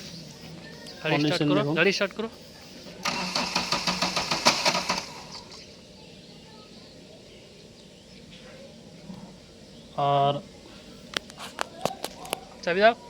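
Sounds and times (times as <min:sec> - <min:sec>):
diesel engine cranking: 0:03.0 - 0:05.7.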